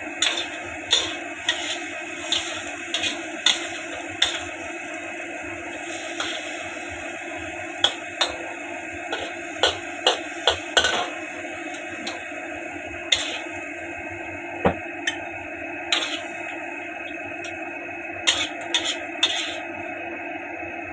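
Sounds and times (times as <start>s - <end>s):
steady hum: 0.0s - 20.9s.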